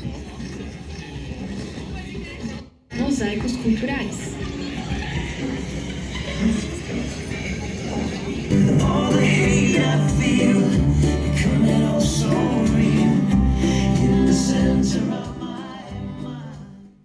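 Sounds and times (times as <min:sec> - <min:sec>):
music with heavy bass: 0:08.5 - 0:16.8.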